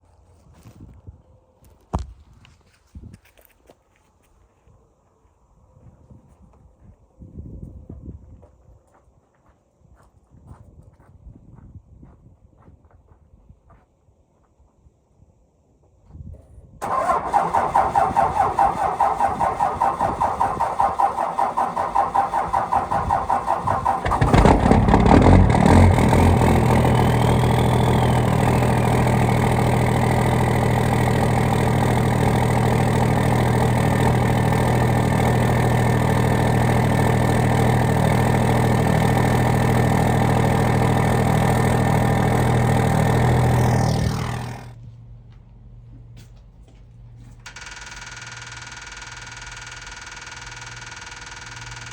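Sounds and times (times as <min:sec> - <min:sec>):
starter cranking engine: 0:16.8 - 0:44.8, 0:47.5 - 0:51.9
diesel engine idling: 0:16.8 - 0:44.9.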